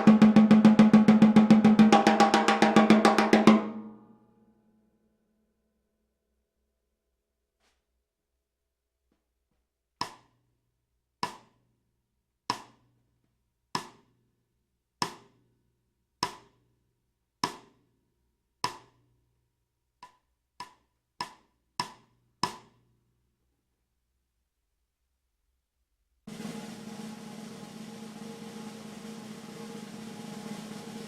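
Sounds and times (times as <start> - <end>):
snare drum strokes: 26.3 - 31.0.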